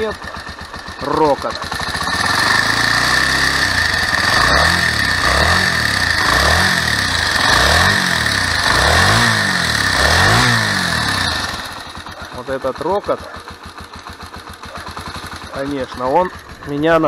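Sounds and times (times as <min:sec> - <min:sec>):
motorcycle engine idling and revving: 0:00.0 - 0:17.0.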